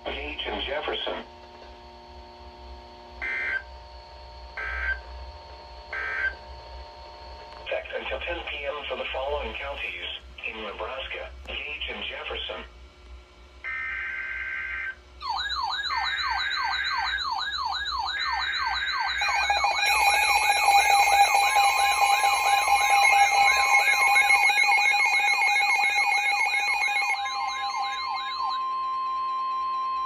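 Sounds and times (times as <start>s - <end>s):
steady alarm tone: 0.0s - 10.1s, 13.6s - 30.0s
siren wail rising and falling: 13.7s - 30.0s
buzzy data bursts: 19.1s - 28.5s.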